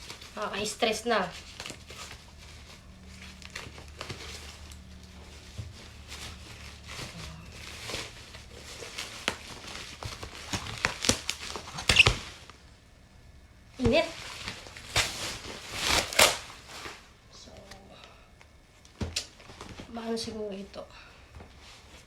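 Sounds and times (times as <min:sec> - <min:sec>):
plastic wrapping rustling: 0:00.0 - 0:12.8, 0:13.8 - 0:17.2
packaging ripping: 0:06.0 - 0:12.5, 0:14.2 - 0:17.0.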